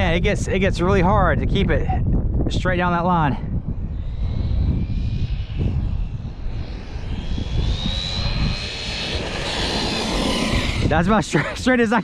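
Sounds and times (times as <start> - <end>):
low rumbling noise: 0.0 - 11.8
electric motor whining: 3.6 - 11.6.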